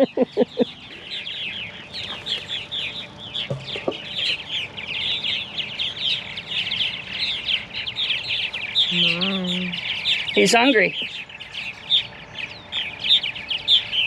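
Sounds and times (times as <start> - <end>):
nestling begging chirps: 0.0 - 14.0.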